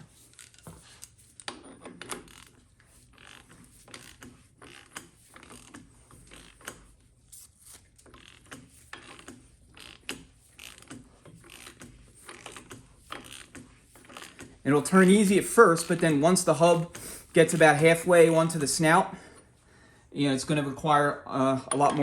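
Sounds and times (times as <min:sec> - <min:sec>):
ratchet wrench clicking: 0:02.0 - 0:02.6, 0:03.2 - 0:14.6.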